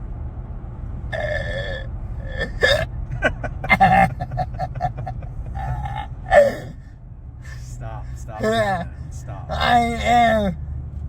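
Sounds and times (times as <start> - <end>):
truck cabin rumble: 0.0 - 11.0
person hiccuping: 1.2 - 2.9, 3.5 - 6.8, 8.4 - 8.9
person laughing: 2.4 - 6.7, 8.4 - 8.9.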